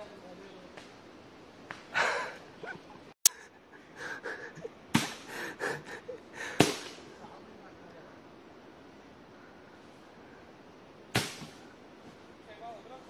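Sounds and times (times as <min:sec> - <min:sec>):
heavy panting breaths: 0:05.2 - 0:06.6.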